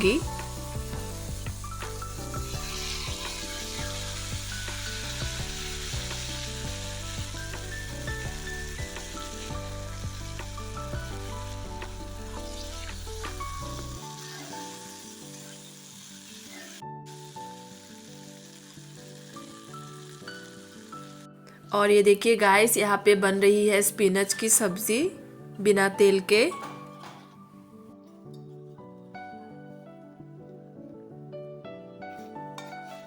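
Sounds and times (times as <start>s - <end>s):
beans sizzling in hot oil: 0.0s - 21.7s
soft background music: 0.0s - 33.0s.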